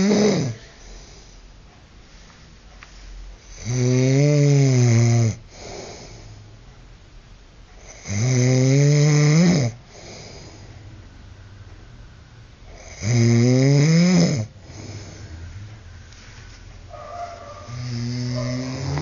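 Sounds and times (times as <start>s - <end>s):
man snoring loudly: 0.0s - 0.6s, 3.5s - 5.4s, 7.9s - 9.8s, 12.7s - 15.4s, 17.7s - 19.0s.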